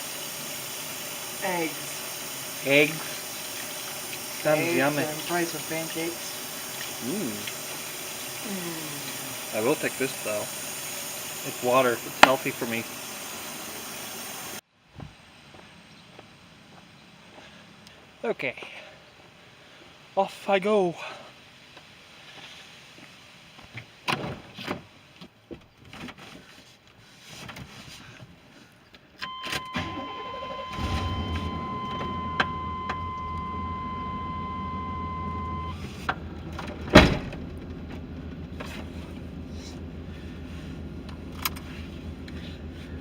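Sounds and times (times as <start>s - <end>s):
car engine starting and idling: 0.0s - 14.6s, 29.3s - 43.0s
electronic warning tone: 29.3s - 35.8s
loud thump: 36.9s - 37.7s.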